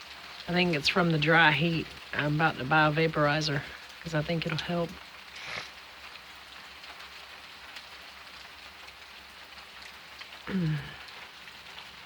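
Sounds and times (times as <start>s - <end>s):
gentle rain falling: 0.0s - 12.0s
water dripping: 0.0s - 12.0s
person's voice: 0.5s - 5.6s, 10.5s - 11.0s.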